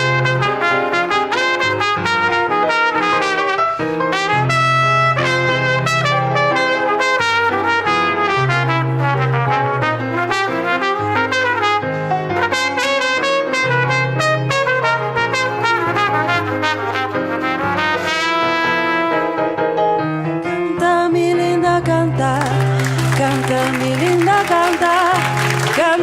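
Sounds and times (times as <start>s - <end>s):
brass section playing salsa: 0.0s - 19.6s.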